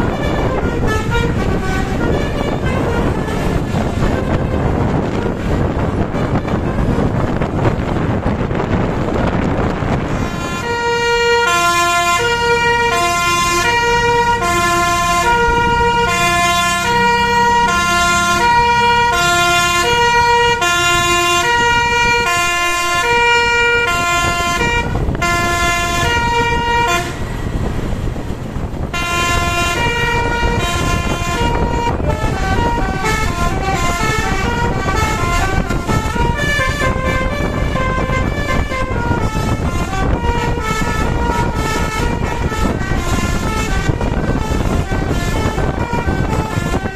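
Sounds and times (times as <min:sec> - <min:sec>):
multi-tone bus air horn tune: 0:00.0 - 0:46.9
low rumble: 0:12.0 - 0:46.9.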